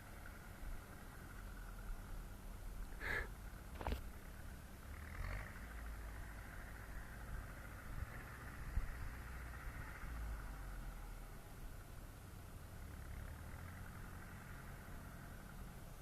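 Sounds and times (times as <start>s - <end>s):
tractor diesel engine under load: 0.0s - 16.0s.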